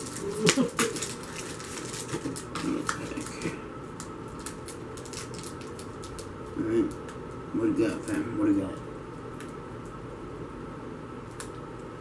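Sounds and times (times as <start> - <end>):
foil wrappers crinkling: 0.0 - 7.0.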